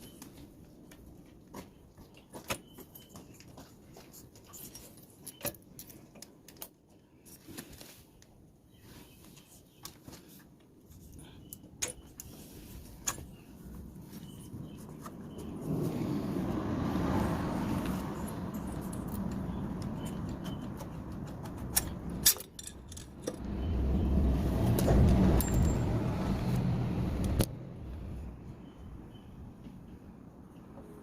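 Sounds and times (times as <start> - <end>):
metal tools clinking on engine parts: 18.2 - 23.5, 24.8 - 26.0.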